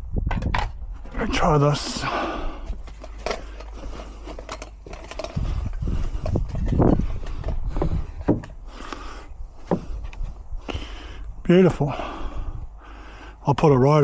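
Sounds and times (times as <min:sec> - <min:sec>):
timber knocking and scraping: 0:02.8 - 0:08.8, 0:09.6 - 0:10.4.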